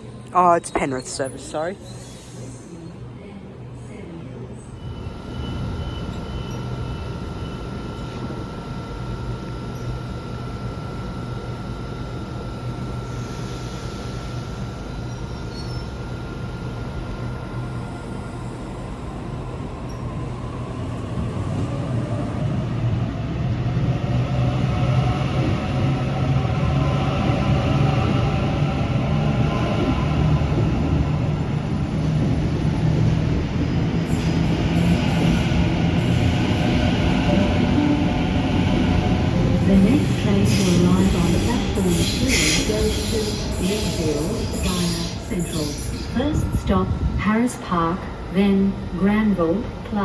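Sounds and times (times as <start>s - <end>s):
electric train rumbling: 0.0s - 50.0s
train hiss: 13.0s - 14.9s, 39.6s - 47.5s
constant high tone: 37.6s - 49.5s.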